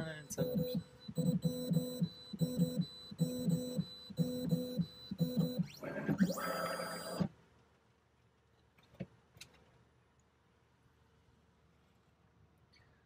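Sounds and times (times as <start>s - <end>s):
key machine motors humming: 0.0s - 7.3s
machine whine sliding in pitch: 0.0s - 7.3s.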